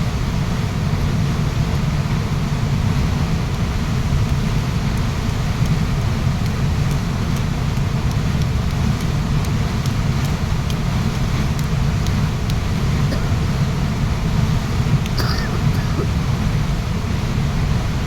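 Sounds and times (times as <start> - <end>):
ticks of water droplets: 4.2 - 13.6.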